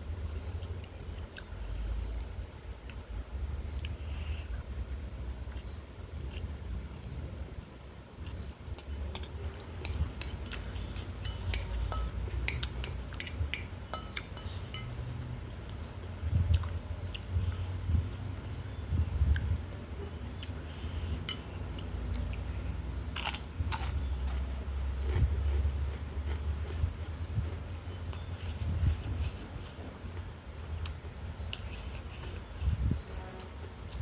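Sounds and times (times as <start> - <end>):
steady low hum: 0.0 - 34.0
chewing and mouth clicks: 16.5 - 19.6.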